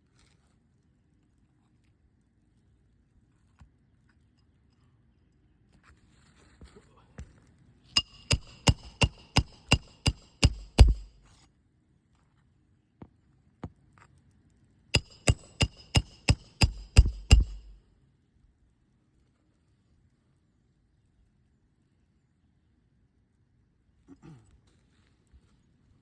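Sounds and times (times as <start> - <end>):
hammer driving nails: 8.0 - 11.2, 15.0 - 17.8.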